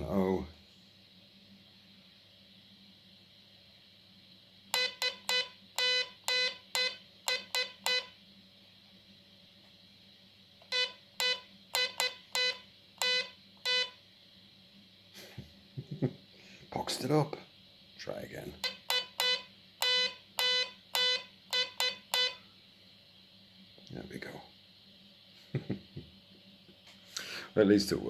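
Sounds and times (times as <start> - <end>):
buzzy morse code beeps: 4.7 - 8.2, 10.7 - 14.0, 18.6 - 22.4.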